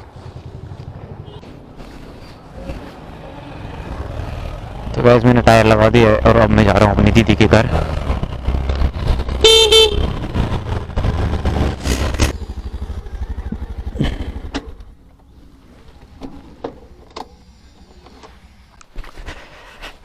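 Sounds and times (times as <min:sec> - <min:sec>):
engine and road rumble: 0:00.0 - 0:20.0
vehicle horn tooting: 0:09.4 - 0:10.2.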